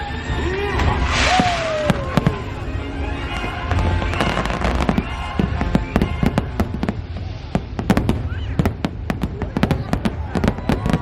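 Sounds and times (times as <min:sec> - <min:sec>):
soundtrack music: 0:00.0 - 0:07.4
fireworks cracking and popping: 0:00.2 - 0:11.0.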